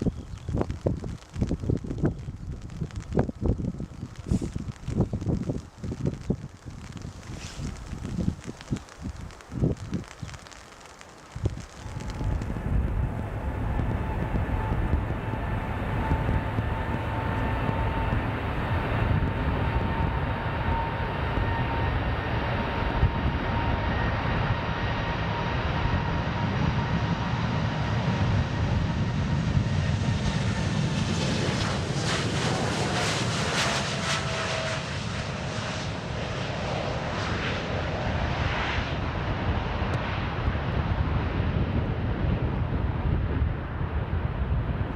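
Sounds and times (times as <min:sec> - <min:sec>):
jet airliner engines: 0:00.0 - 0:44.9.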